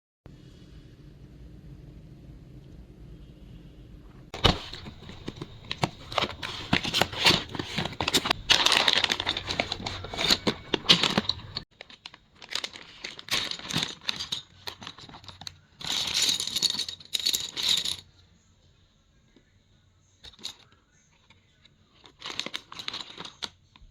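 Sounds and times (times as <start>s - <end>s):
packaging crinkling and tearing: 4.4s - 14.2s.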